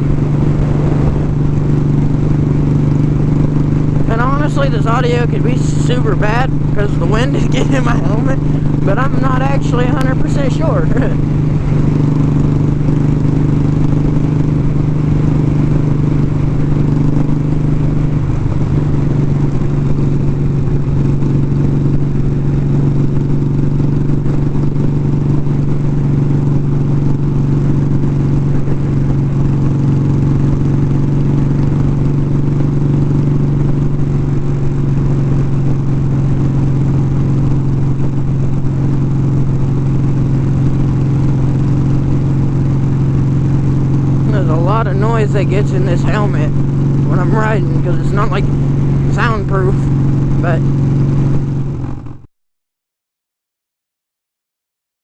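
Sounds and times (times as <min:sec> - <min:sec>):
wind buffeting microphone: 0:00.0 - 0:31.2
motorcycle engine cruising: 0:00.0 - 0:52.3.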